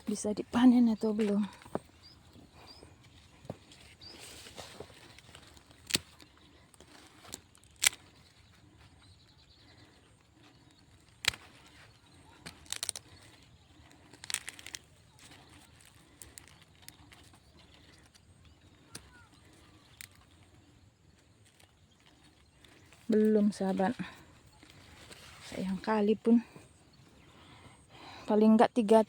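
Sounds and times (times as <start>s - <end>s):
corn leaves rustling: 0.0s - 26.6s
husks snapping and crackling: 3.4s - 8.4s, 9.6s - 25.9s.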